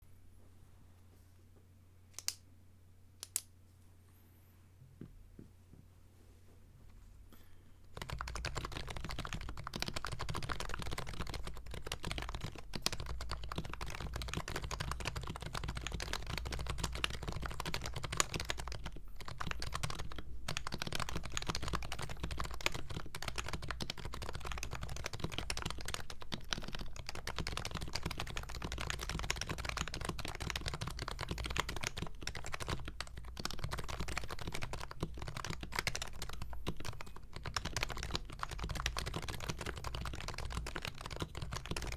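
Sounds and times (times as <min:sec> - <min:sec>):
fast soft keyboard typing: 0:07.9 - 0:41.9.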